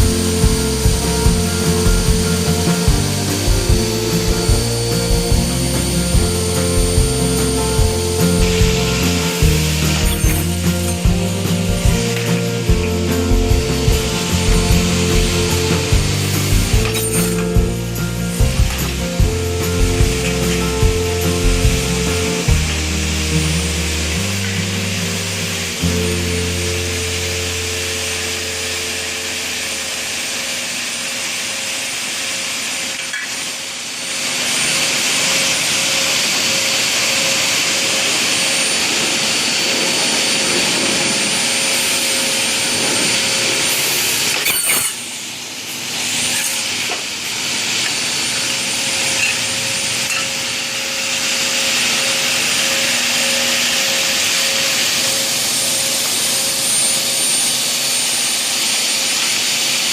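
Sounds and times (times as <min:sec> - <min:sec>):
circular saw cutting aluminium: 0:00.0 - 0:59.9.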